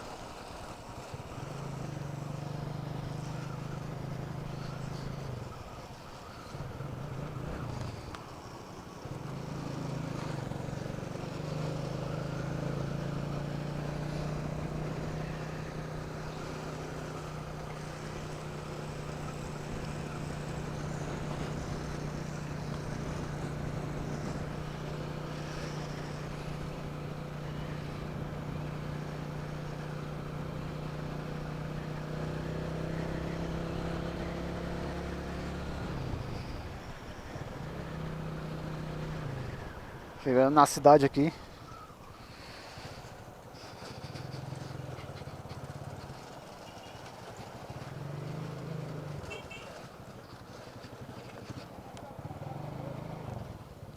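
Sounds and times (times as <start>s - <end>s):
motorcycle engine running: 0.4s - 53.9s.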